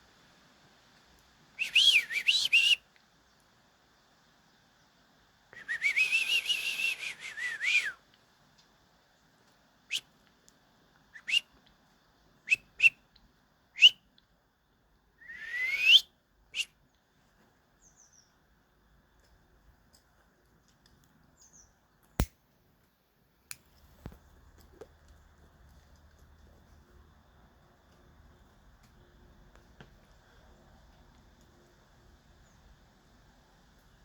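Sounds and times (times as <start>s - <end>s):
person whistling: 1.6s - 2.8s, 5.6s - 8.0s, 15.3s - 16.0s.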